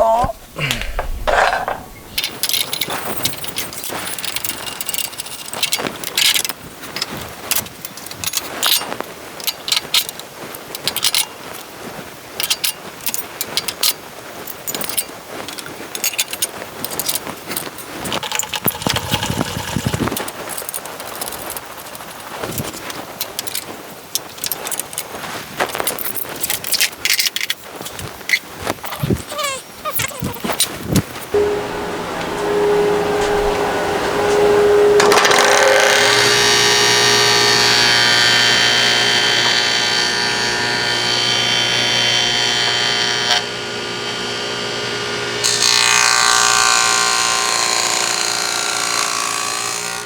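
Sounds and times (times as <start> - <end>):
metal scraping: 0.0 - 10.2, 15.9 - 23.7, 28.3 - 39.6
metal blades clinking and rattling: 1.0 - 11.7, 12.4 - 31.4.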